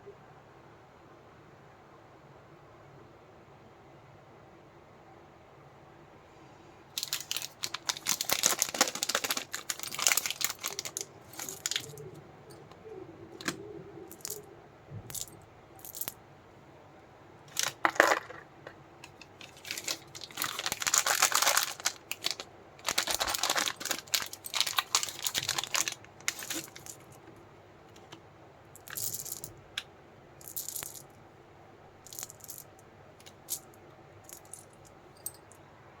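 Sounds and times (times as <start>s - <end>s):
candies rattling in plastic packet: 7.0s - 12.2s, 13.4s - 14.4s, 15.1s - 16.1s, 17.5s - 27.2s, 28.8s - 29.5s, 30.4s - 31.0s, 32.1s - 33.7s, 34.3s - 34.8s.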